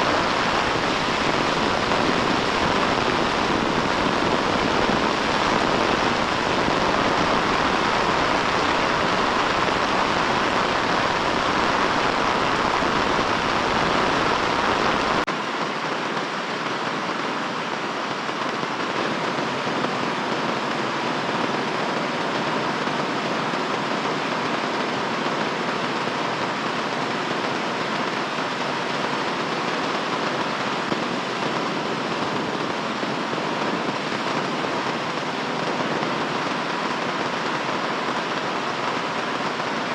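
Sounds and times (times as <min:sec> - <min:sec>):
heavy rain hissing: 0:00.0 - 0:39.9.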